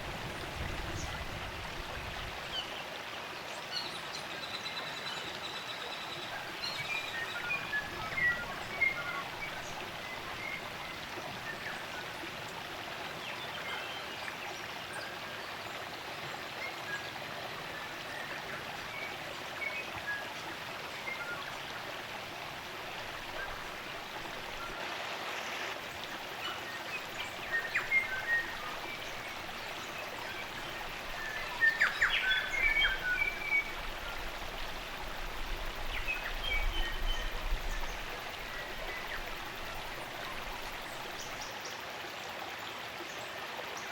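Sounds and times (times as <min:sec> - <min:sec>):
stream running: 0:00.0 - 0:43.9.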